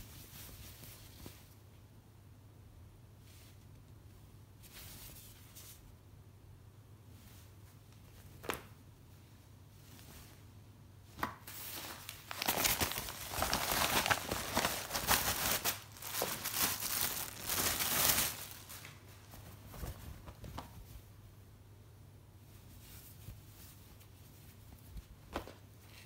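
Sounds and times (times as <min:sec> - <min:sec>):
packaging crinkling and tearing: 0:11.6 - 0:19.0.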